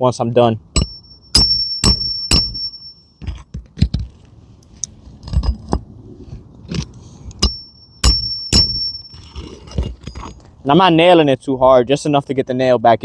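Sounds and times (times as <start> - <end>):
high metallic ringing: 0.7 - 3.5, 7.4 - 10.5
hammer tapping nailing tool: 0.8 - 2.7.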